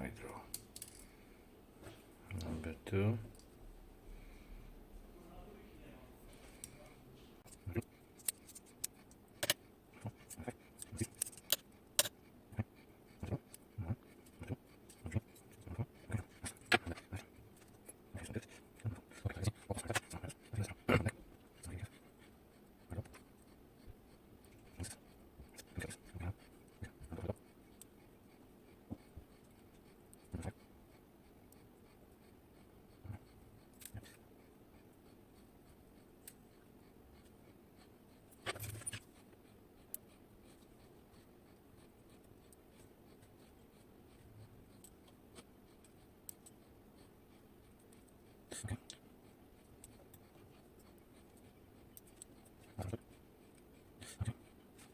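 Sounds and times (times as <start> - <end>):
small metal clicks of tools: 0.5 - 1.1.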